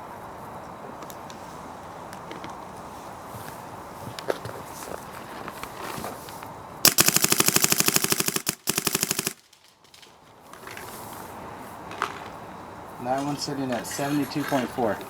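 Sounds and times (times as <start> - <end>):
paintball marker firing rapidly: 6.8 - 9.5.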